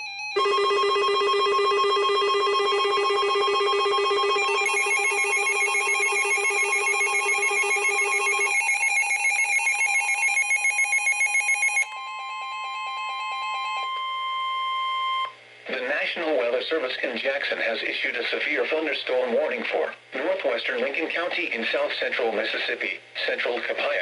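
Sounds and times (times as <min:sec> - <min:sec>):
steady high alert tone: 0:00.0 - 0:15.3.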